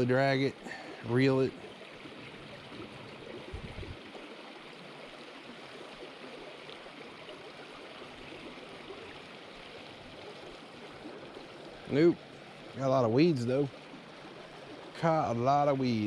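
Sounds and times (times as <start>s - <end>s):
river water flowing: 0.0s - 16.0s.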